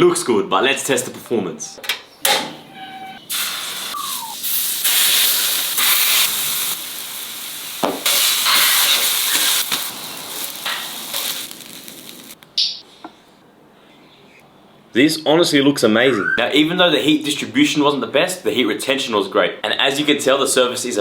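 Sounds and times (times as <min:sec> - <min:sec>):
burger patties sizzling: 0:03.2 - 0:12.4.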